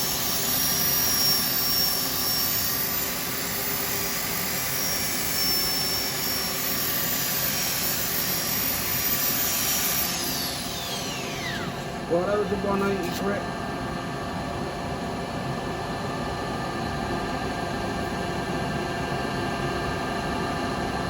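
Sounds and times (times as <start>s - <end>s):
sanding hiss on lathe: 0.0s - 11.9s
motor winding down: 0.0s - 13.5s.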